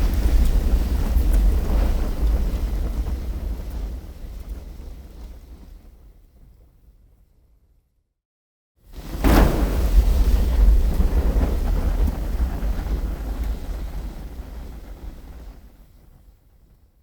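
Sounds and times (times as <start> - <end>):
fire igniting with a whoosh: 0.0 - 6.0, 8.9 - 16.5
fire burning with deep rumble: 0.0 - 7.3, 8.9 - 17.0.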